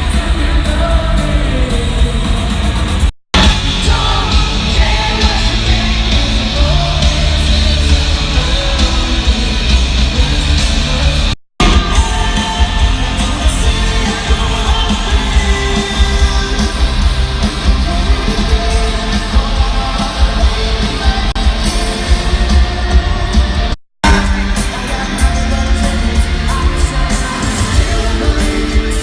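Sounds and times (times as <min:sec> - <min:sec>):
live rock music: 0:00.0 - 0:29.0.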